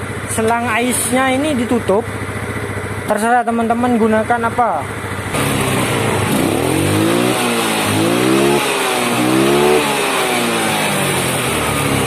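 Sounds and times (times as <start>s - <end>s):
scooter engine revving: 0.0s - 12.0s.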